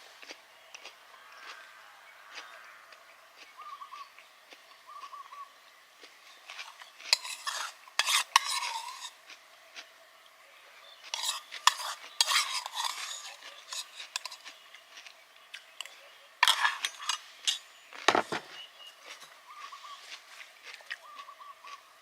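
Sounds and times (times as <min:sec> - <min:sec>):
utensils scraping cookware: 0:06.6 - 0:09.2, 0:11.1 - 0:14.6, 0:15.8 - 0:18.5.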